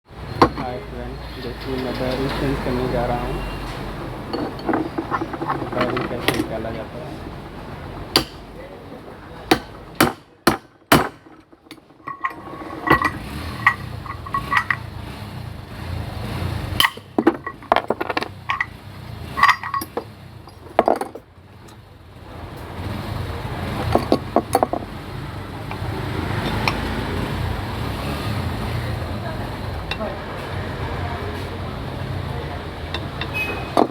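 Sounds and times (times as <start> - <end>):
metallic tool taps and clinks: 4.3 - 6.6, 10.9 - 14.9, 19.4 - 21.8.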